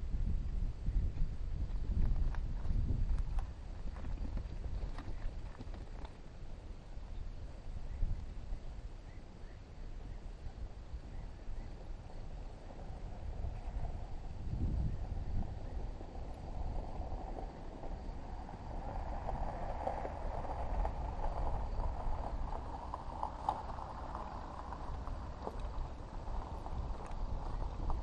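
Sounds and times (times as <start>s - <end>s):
wind rumble on microphone: 0.0s - 28.0s
goats and sheep moving and feeding: 1.2s - 9.5s, 19.3s - 28.0s
small clicks and rustles: 2.0s - 6.5s, 18.9s - 28.0s.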